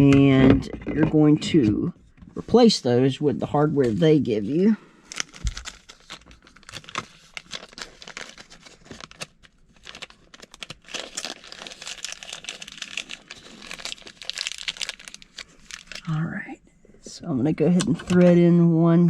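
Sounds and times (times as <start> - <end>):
plastic packaging crinkling: 5.0 - 16.2.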